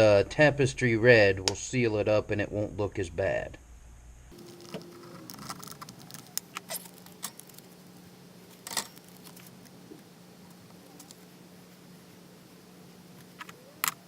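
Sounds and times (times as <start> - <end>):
steady low hum: 0.0 - 14.0
small objects clicking and tapping: 4.3 - 7.8.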